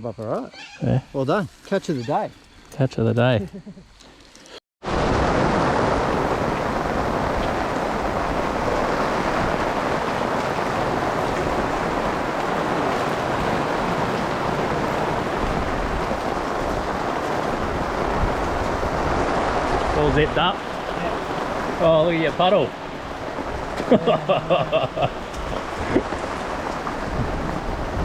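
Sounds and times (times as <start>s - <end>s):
heavy rain falling: 4.8s - 28.0s.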